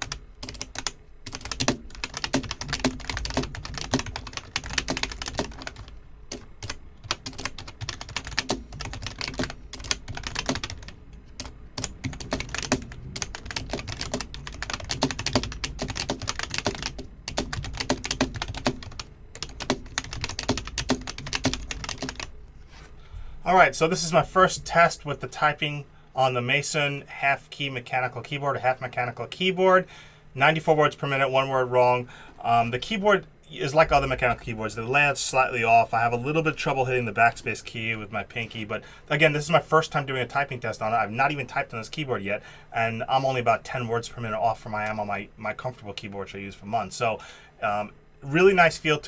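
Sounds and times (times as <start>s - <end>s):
fast keyboard typing: 0.0s - 22.3s.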